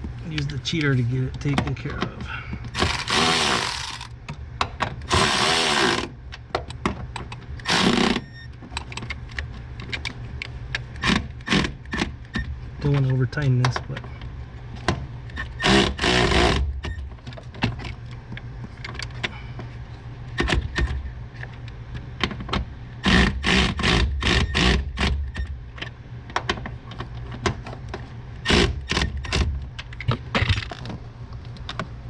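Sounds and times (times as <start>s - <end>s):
hand ratchet clicking: 2.8s - 4.1s, 5.1s - 6.1s, 7.6s - 8.2s, 15.6s - 16.6s.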